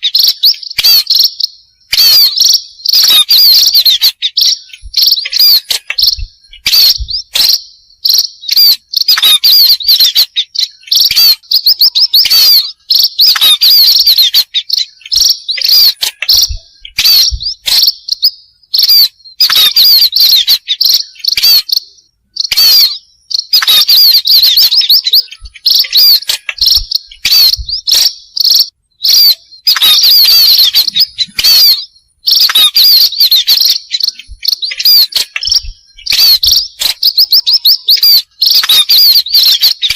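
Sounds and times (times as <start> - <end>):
birds chirping and twittering: 0.0 - 39.9.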